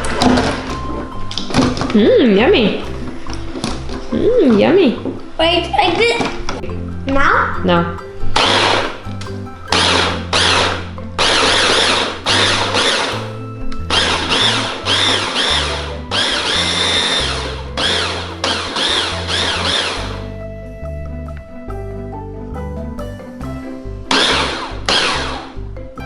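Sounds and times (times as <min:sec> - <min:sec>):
electric hand mixer whining: 0:14.0 - 0:20.2.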